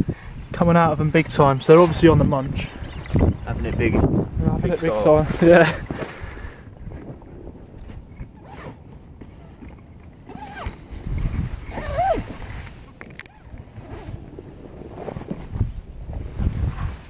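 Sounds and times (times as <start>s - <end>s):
wind on microphone: 0.0s - 17.0s
rustling: 4.6s - 17.0s.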